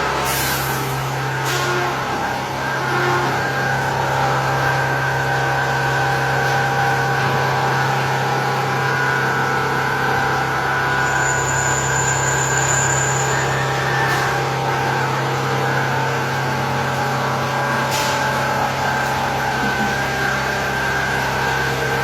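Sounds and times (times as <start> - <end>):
machinery humming with whining tones: 0.0 - 22.0
high-pitched whine: 8.8 - 22.0.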